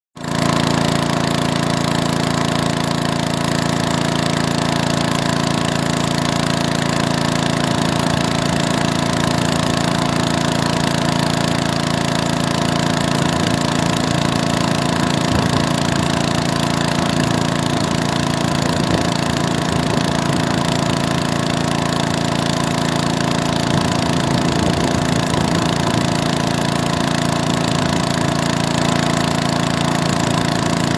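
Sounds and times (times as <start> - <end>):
small engine running steadily: 0.2 - 30.9.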